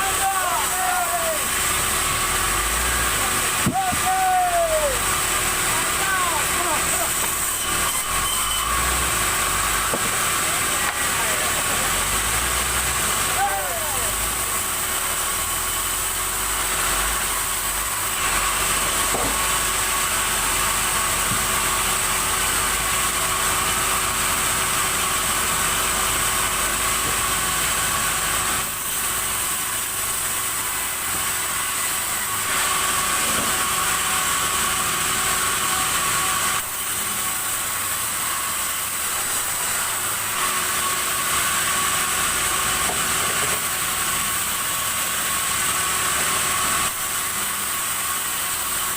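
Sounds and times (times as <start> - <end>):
sawmill saw running: 0.0 - 48.9.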